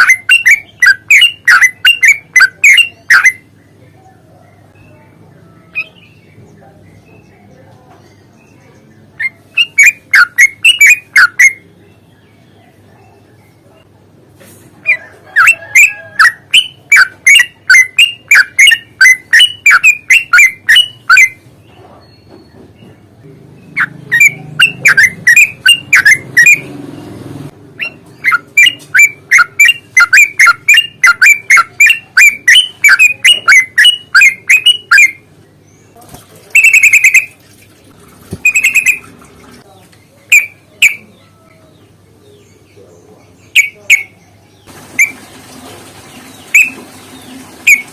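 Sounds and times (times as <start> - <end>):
harsh bird calls: 0.0 - 37.4, 38.3 - 47.9
birds chirping rapidly: 0.0 - 47.9.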